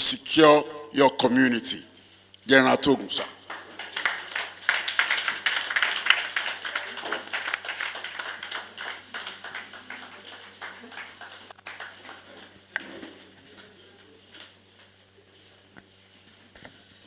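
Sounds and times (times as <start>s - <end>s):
audience clapping: 2.5s - 14.0s.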